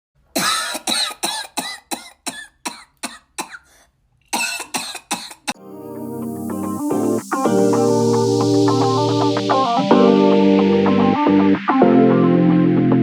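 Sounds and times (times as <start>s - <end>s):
person coughing: 0.4s - 5.6s
electronic music: 5.6s - 13.0s.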